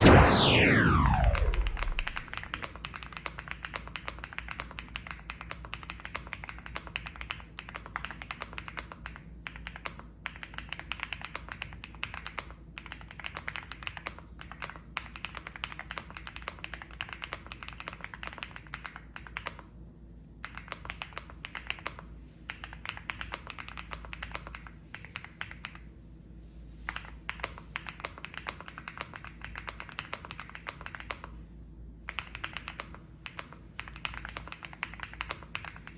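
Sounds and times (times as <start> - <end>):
mechanical keyboard typing: 2.4 - 19.6, 20.4 - 25.8, 26.9 - 31.3, 32.1 - 35.9.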